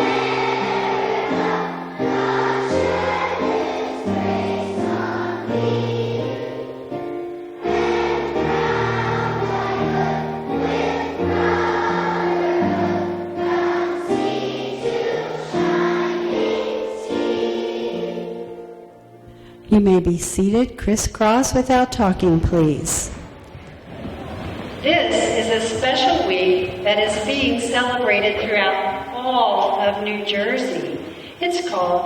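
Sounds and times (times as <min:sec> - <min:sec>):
choir singing held chords: 0:00.0 - 0:19.6.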